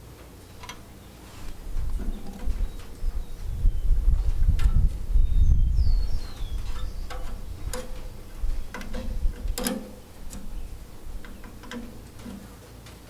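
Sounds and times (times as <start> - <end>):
light metallic clicks and taps: 8.7 - 10.5.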